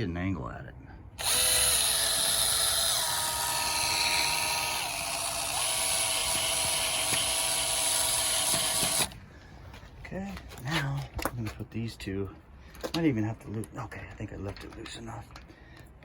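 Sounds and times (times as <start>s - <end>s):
cordless drill whining: 1.2s - 9.2s.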